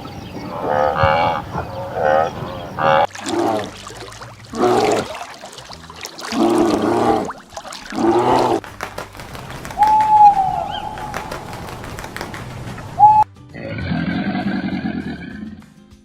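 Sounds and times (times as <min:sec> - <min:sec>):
farm animal calls: 0:00.0 - 0:03.7.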